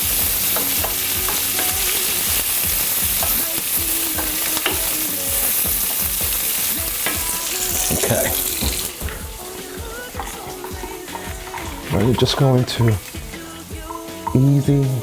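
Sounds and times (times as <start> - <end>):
vegetables sizzling in frying pan: 0.0 - 15.0.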